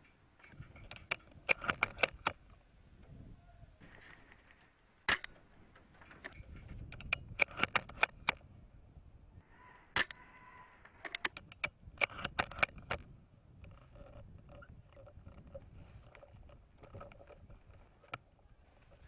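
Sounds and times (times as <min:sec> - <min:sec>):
sharp clicks and snaps: 0:00.4 - 0:02.4, 0:06.1 - 0:08.4, 0:10.9 - 0:15.5.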